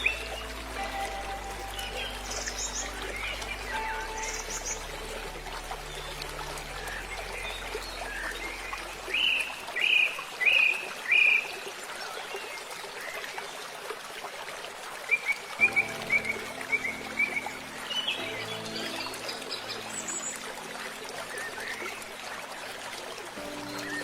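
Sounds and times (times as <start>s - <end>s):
birds chirping: 0.0s - 11.4s
water flowing: 0.0s - 24.0s.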